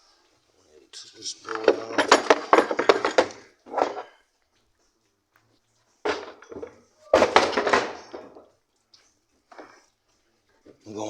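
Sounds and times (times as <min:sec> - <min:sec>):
metal tools clanking: 0:01.4 - 0:04.3, 0:06.0 - 0:08.6.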